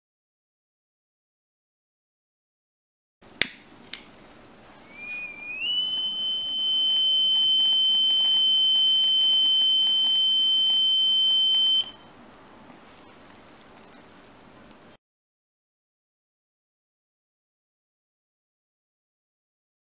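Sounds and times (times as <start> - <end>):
electronic alarm buzzer: 4.9 - 12.0.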